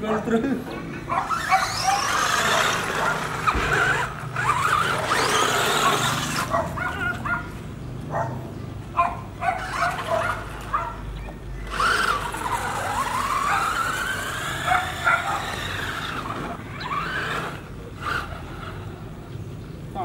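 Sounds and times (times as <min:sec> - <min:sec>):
dog yipping: 0:01.1 - 0:03.3, 0:05.0 - 0:07.5, 0:08.1 - 0:08.4, 0:09.0 - 0:12.1, 0:13.3 - 0:14.0, 0:14.6 - 0:15.6
remote-control car motor whining: 0:01.1 - 0:07.3, 0:09.6 - 0:10.8, 0:11.6 - 0:19.3.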